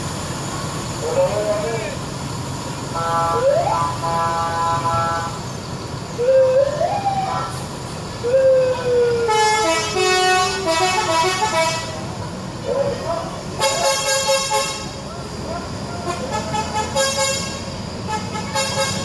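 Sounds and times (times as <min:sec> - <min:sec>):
musical bus air horn: 0:02.9 - 0:05.5, 0:09.2 - 0:12.1, 0:13.6 - 0:15.0, 0:16.0 - 0:19.0.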